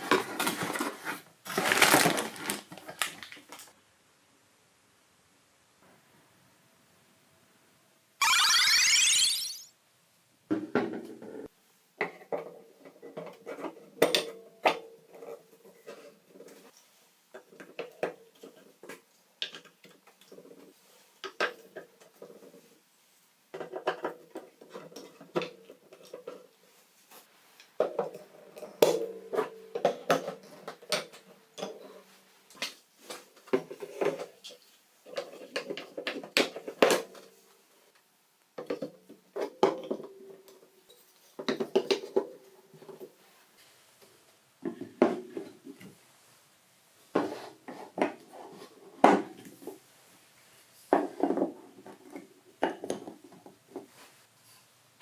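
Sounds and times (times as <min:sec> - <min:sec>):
balls rolling down marble run: 0:08.2 - 0:09.7.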